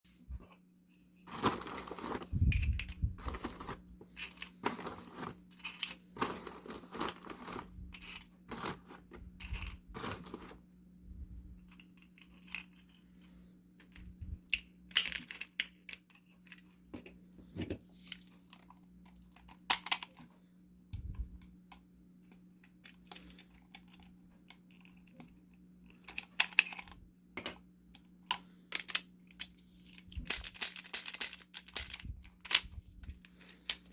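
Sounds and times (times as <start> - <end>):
faint steady hum: 0.1 - 33.9
plastic clicks and rattles: 22.6 - 33.9.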